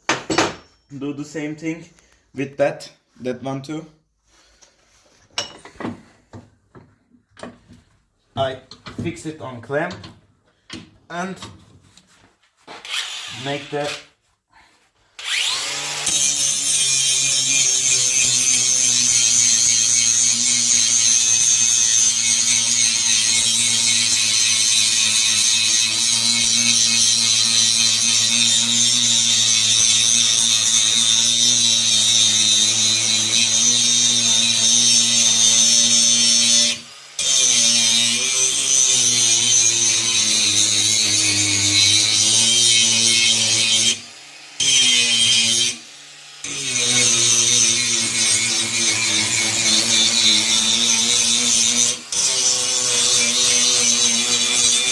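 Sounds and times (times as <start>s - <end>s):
angle grinder grinding iron: 12.7s - 14.2s, 15.2s - 54.9s.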